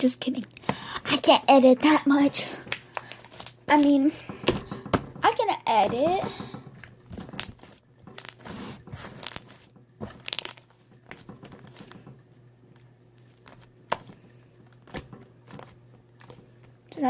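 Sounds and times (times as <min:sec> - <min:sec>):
slime crackling and popping: 0:07.0 - 0:12.0.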